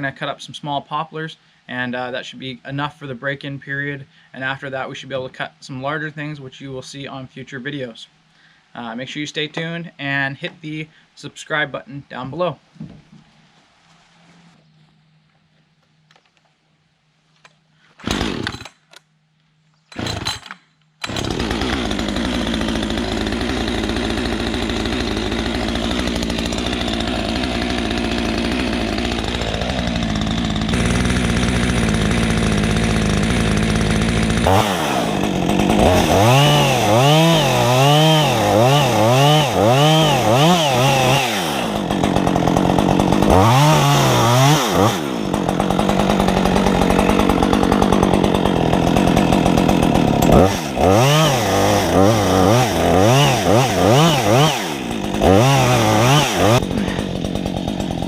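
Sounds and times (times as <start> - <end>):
chainsaw starting and revving: 18.0 - 19.0, 19.9 - 58.0.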